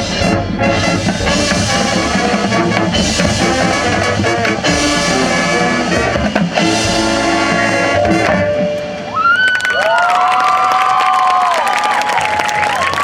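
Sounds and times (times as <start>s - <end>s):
marching band brass chords: 0.0s - 9.1s
drums and percussion: 0.0s - 10.0s.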